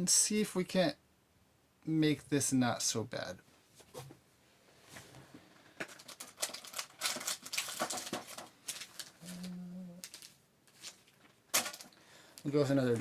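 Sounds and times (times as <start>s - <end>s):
foil packs crinkling: 5.8s - 12.5s
small clicks and crackles: 5.8s - 12.5s.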